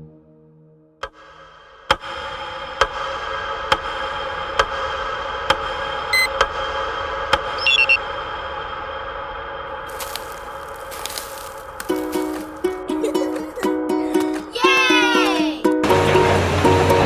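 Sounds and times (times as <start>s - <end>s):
high beep: 7.6s - 8.0s
short chirp: 7.6s - 8.0s
layered ambient drone: 15.6s - 17.0s.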